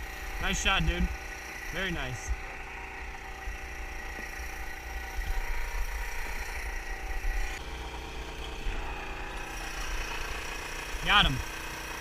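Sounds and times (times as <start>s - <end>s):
generator running: 0.0s - 12.0s.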